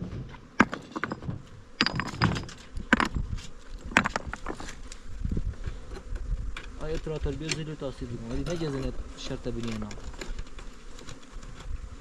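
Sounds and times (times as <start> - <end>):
wooden hive parts clicking and knocking: 0.0 - 8.9, 9.5 - 11.8.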